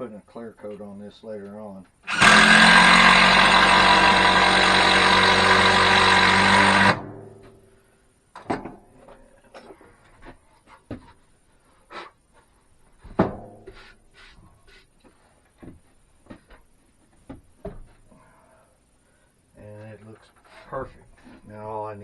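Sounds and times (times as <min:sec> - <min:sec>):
power tool motor running: 0:02.1 - 0:07.0.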